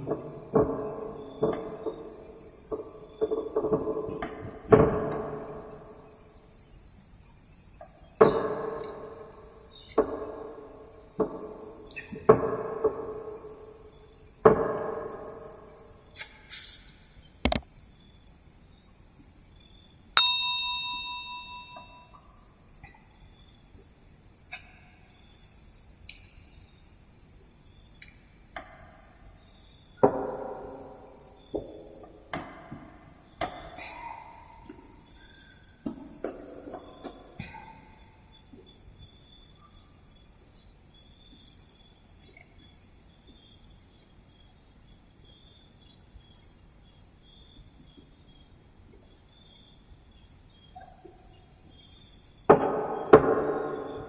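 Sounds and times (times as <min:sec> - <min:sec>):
clinks against drinking glass: 0:20.2 - 0:22.2.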